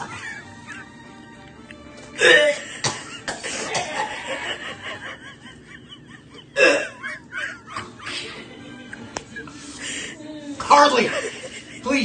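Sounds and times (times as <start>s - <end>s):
laughter: 0.0s - 1.0s, 2.6s - 9.5s, 11.0s - 11.9s
person gagging: 2.2s - 4.1s, 6.4s - 7.9s.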